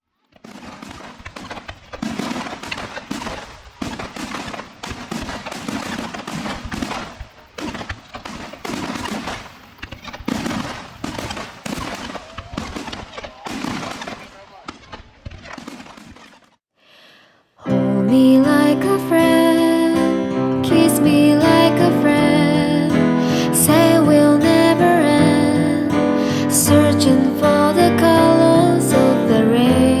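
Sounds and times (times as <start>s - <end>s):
fireworks bangs and crackles: 0.3s - 16.6s
heavy fireworks boom: 0.4s - 16.4s.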